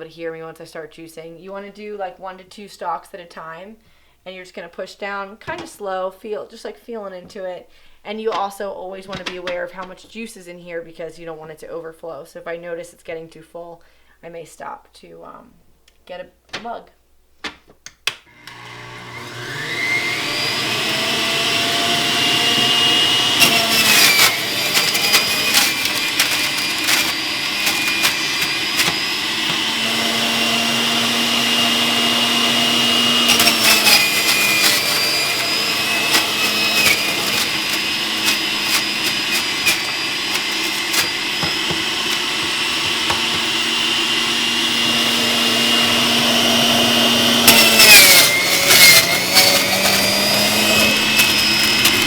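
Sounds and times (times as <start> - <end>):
juicer motor whining: 18.3 - 52.0.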